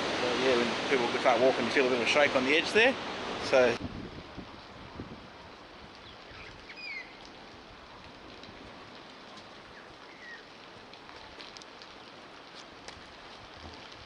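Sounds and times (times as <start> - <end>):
steady outdoor hiss: 0.0 - 14.0
high bird chirps: 6.3 - 7.2.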